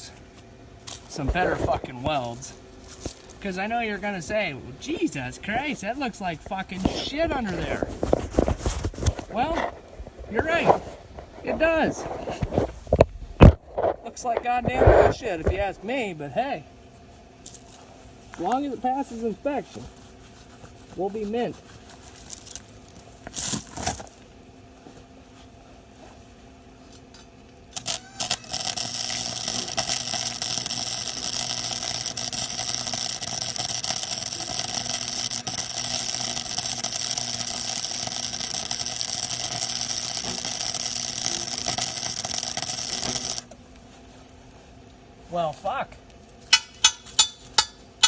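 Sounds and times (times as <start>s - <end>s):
welder arc crackling: 0.8s - 9.8s, 18.3s - 19.8s, 21.0s - 24.2s, 27.1s - 43.8s.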